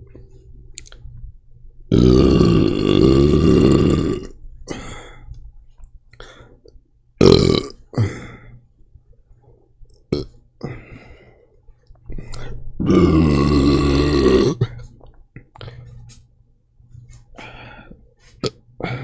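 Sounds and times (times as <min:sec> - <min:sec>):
man burping loudly: 0:01.9 - 0:04.3, 0:07.2 - 0:08.1, 0:10.1 - 0:10.4, 0:12.8 - 0:14.8.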